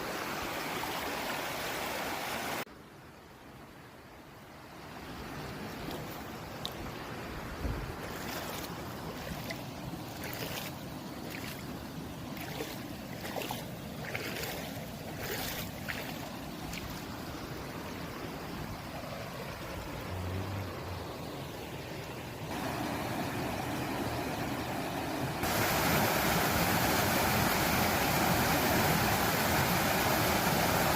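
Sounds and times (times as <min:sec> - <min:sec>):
water splashes: 0:05.5 - 0:21.0, 0:25.4 - 0:30.9
stream babbling over rocks: 0:05.5 - 0:30.9.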